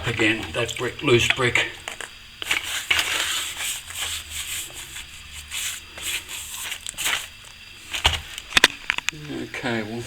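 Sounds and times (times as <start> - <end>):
hand tool scraping mortar: 2.4 - 7.4.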